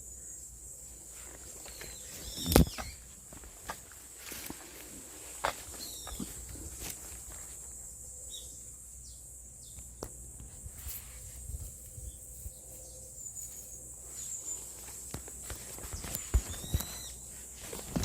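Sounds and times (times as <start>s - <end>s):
steady background hiss: 0.0s - 18.0s
high bird chirps: 15.9s - 17.2s.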